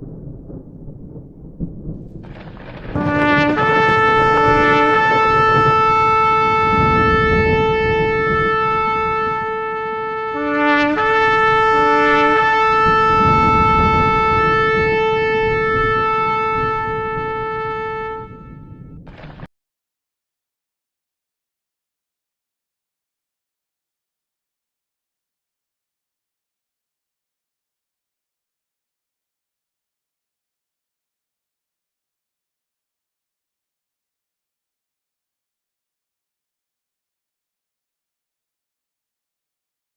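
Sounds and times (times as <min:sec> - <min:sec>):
shofar blasts: 0:03.0 - 0:19.0.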